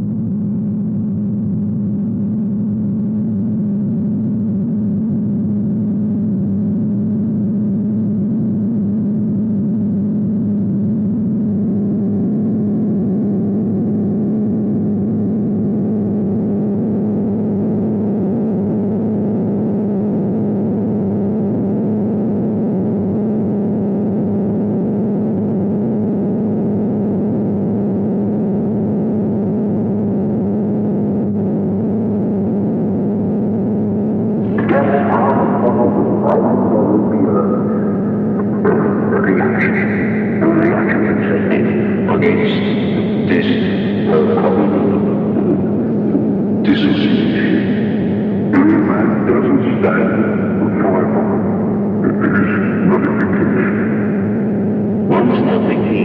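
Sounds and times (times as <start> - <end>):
synthesizer drone: 34.2 - 56.0.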